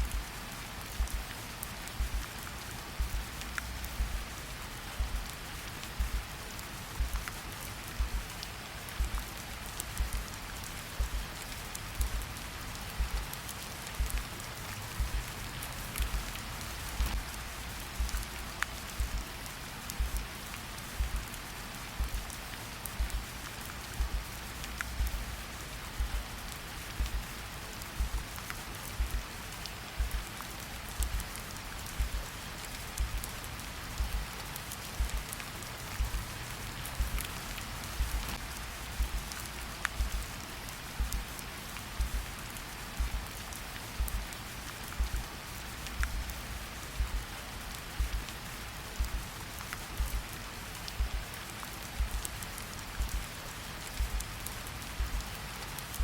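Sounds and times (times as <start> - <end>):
steady rain falling: 0.0 - 56.0
heartbeat double thump: 1.0 - 1.2, 2.0 - 2.2, 3.0 - 3.2, 4.0 - 4.2, 5.0 - 5.2, 6.0 - 6.2, 7.0 - 7.2, 8.0 - 8.2, 9.0 - 9.2, 10.0 - 10.2, 11.0 - 11.2, 12.0 - 12.2, 13.0 - 13.2, 14.0 - 14.2, 15.0 - 15.2, 16.0 - 16.2, 18.0 - 18.2, 19.0 - 19.2, 20.0 - 20.2, 21.0 - 21.2, 22.0 - 22.2, 23.0 - 23.2, 24.0 - 24.2, 25.0 - 25.2, 26.0 - 26.2, 27.0 - 27.2, 28.0 - 28.2, 29.0 - 29.2, 30.0 - 30.2, 31.0 - 31.2, 32.0 - 32.2, 33.0 - 33.2, 34.0 - 34.2, 35.0 - 35.2, 36.0 - 36.2, 37.0 - 37.2, 38.0 - 38.3, 39.0 - 39.3, 40.0 - 40.2, 41.0 - 41.2, 42.0 - 42.2, 43.0 - 43.2, 44.0 - 44.2, 45.0 - 45.2, 47.0 - 47.2, 48.0 - 48.2, 49.0 - 49.2, 50.0 - 50.2, 51.0 - 51.2, 52.0 - 52.2, 53.0 - 53.2, 54.0 - 54.2, 55.0 - 55.2.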